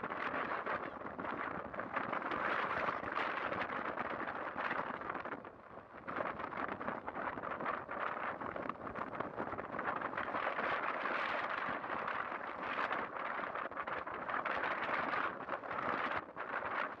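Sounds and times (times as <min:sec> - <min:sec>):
strong wind against microphone: 0:00.0 - 0:17.0.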